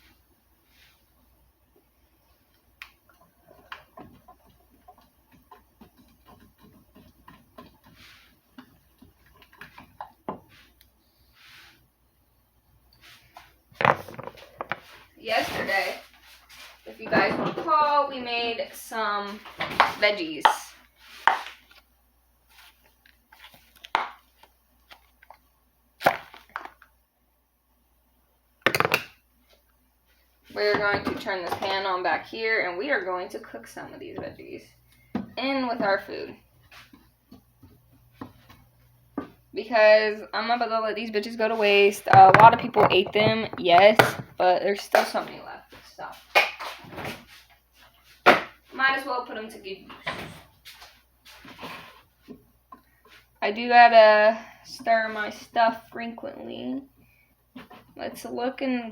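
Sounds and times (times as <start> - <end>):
kitchen items knocking and clacking: 3.1 - 10.5, 13.7 - 15.9, 17.0 - 17.9, 28.6 - 29.2, 41.6 - 45.4.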